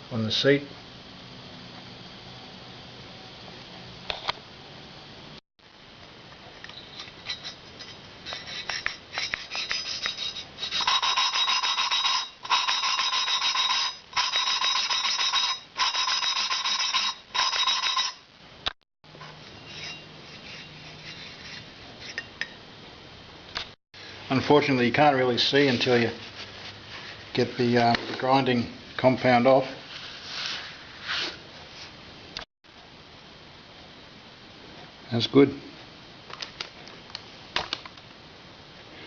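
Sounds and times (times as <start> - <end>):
light scratching: 6.8 - 17.6, 19.6 - 22.3.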